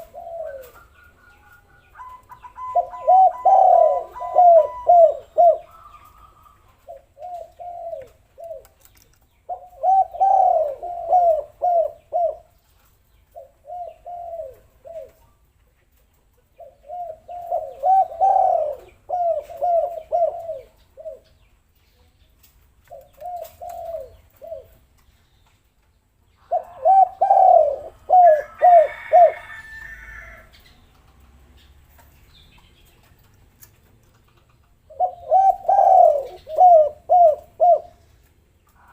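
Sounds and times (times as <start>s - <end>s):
dove cooing: 0.0s - 12.6s, 13.3s - 15.3s, 16.6s - 21.4s, 22.8s - 24.9s, 26.4s - 30.6s, 34.6s - 38.9s
high twittering bird chirp: 0.2s - 6.6s.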